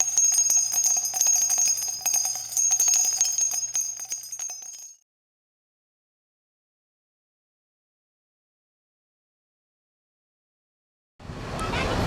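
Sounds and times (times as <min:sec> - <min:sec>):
jingle bells shaken: 0:00.0 - 0:05.0.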